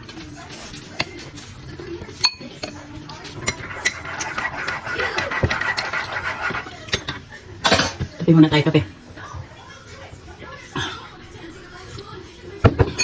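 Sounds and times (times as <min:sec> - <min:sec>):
cutlery clinking against dishes: 0:02.2 - 0:08.1.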